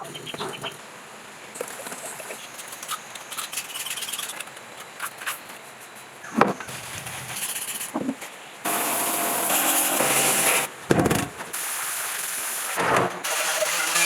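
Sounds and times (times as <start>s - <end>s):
power tool running: 8.7s - 10.7s, 12.8s - 14.0s.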